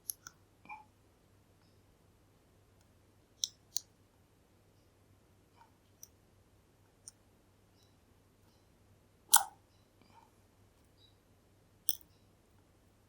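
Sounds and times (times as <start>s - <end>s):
lock picks clicking on pins: 0.0s - 0.4s, 3.4s - 3.9s, 11.9s - 12.1s.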